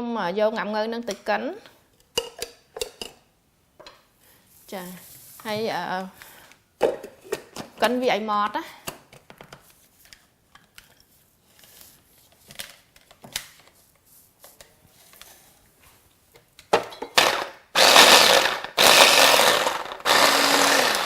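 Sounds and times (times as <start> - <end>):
electric grinder chopping fruit: 17.2 - 21.0.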